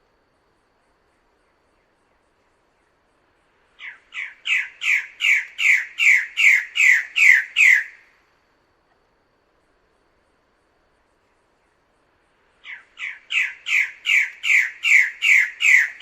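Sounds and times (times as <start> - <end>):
bird calling with falling notes: 3.8 - 8.0, 12.7 - 16.0.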